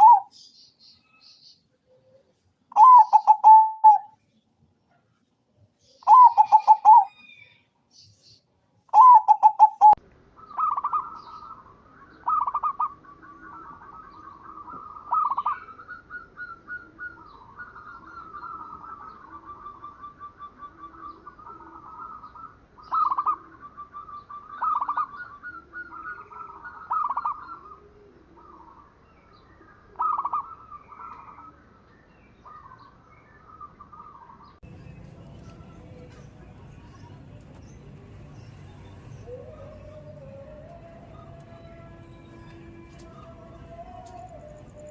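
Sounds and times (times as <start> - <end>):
doves cooing: 0.0 - 0.3, 2.0 - 4.1, 6.0 - 7.4, 8.9 - 11.6, 12.2 - 28.9, 29.7 - 31.6, 35.3 - 44.9.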